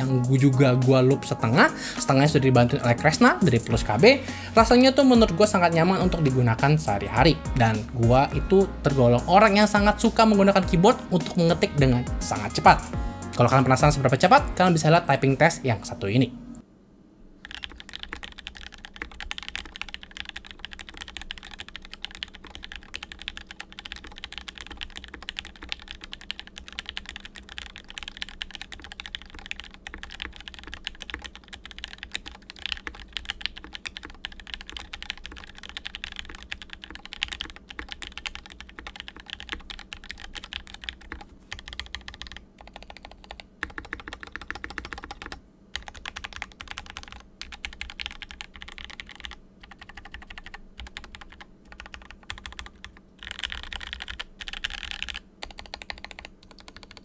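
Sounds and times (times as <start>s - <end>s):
fast typing on mechanical keyboard: 17.4s - 57.0s.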